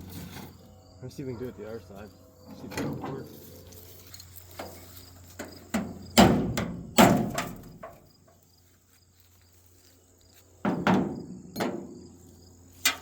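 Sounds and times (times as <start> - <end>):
heavy metal thunk: 5.8 - 8.0, 10.7 - 12.0.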